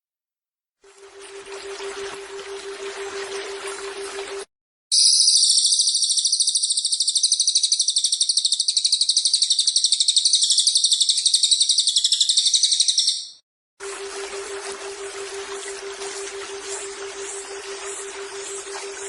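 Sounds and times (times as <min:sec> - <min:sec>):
bird trilling: 0:04.9 - 0:13.4.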